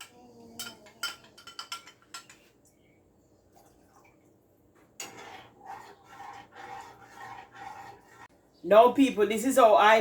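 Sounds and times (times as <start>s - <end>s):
spoon clinking against dish: 0.0s - 2.5s.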